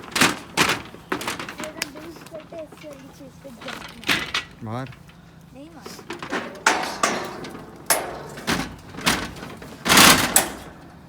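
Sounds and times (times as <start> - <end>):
sharp knocks and bangs: 6.0 - 11.0.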